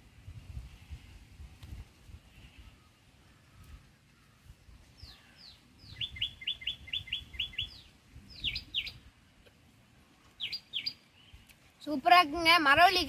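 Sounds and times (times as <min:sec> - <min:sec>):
bird calling: 0:05.0 - 0:09.1, 0:10.3 - 0:11.5.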